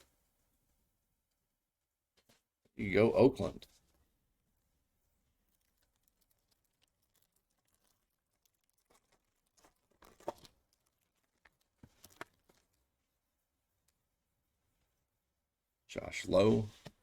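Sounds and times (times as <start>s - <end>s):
light crinkles and clicks: 5.4s - 12.8s.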